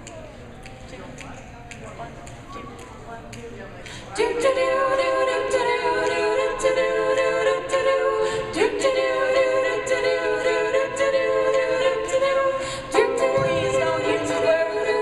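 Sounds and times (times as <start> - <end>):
voices singing wordless harmony: 4.0 - 15.0.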